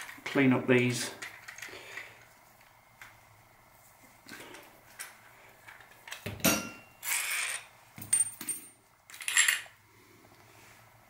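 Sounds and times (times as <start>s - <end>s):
metal clank with ringing: 6.4s - 7.0s
metal rubbing or scraping: 7.0s - 7.7s.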